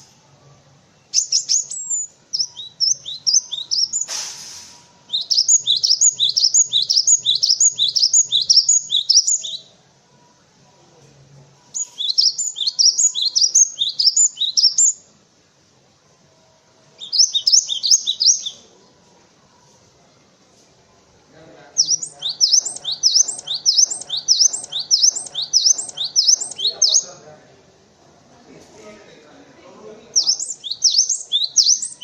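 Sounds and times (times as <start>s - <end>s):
bird singing high chirps: 1.0s - 4.1s, 5.0s - 9.8s, 11.7s - 15.0s, 17.0s - 18.7s, 21.8s - 27.2s, 30.2s - 32.0s.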